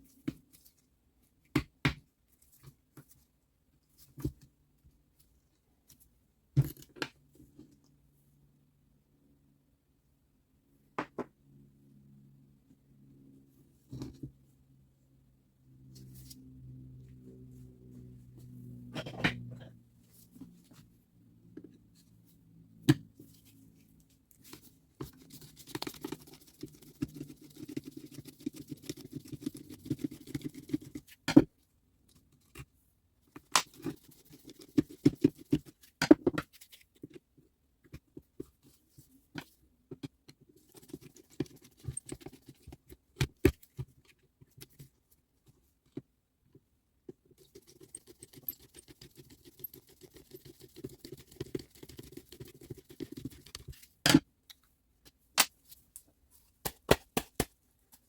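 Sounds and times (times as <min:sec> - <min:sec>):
scraping and rubbing tool parts: 0:40.5 - 0:43.0, 0:47.4 - 0:54.0.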